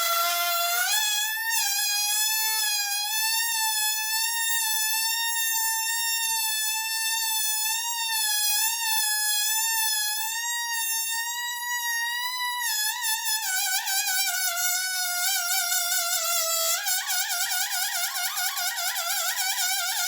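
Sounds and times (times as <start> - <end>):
air squealing out of balloon: 0.0 - 1.6.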